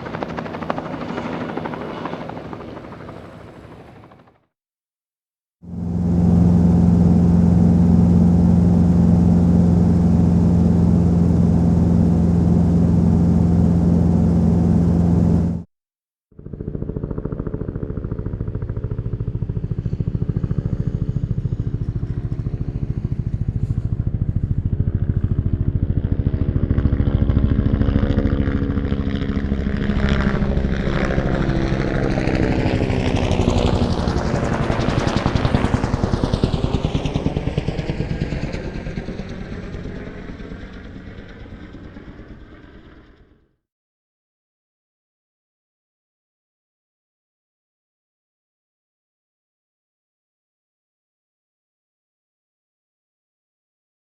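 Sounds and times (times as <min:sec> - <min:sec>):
helicopter rotor beat: 0:00.0 - 0:04.4, 0:05.6 - 0:15.7, 0:16.4 - 0:43.4
helicopter running: 0:00.0 - 0:04.4, 0:05.6 - 0:15.7, 0:16.4 - 0:43.5.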